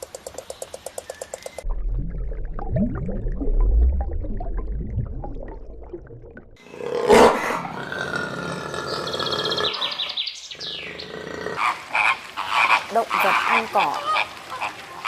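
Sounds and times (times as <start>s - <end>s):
lion growling and roaring: 6.6s - 12.1s.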